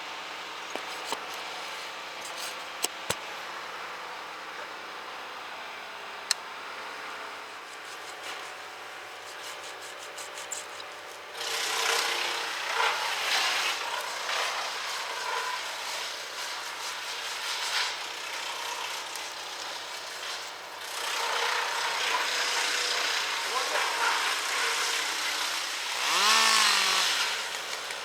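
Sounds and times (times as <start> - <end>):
chainsaw cutting wood: 7.5 - 28.0.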